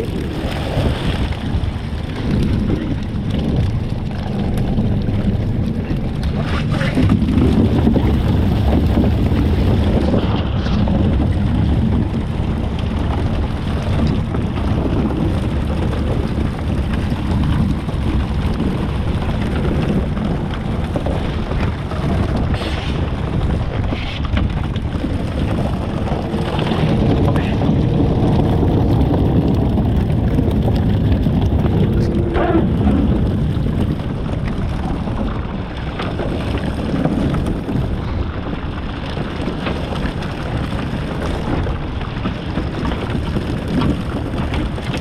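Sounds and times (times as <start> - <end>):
boat engine running: 0.0 - 45.0
water noise: 0.0 - 45.0
wind buffeting microphone: 0.0 - 45.0.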